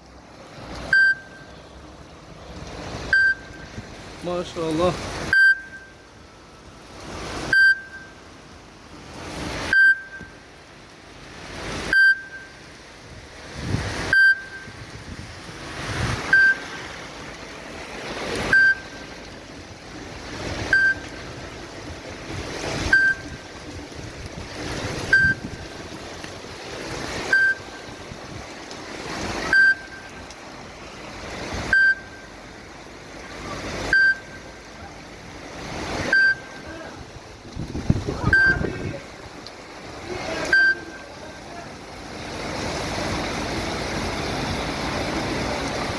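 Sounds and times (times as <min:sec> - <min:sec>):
steady rain falling: 0:00.0 - 0:45.9
short sharp beep-like blip: 0:38.2 - 0:38.8.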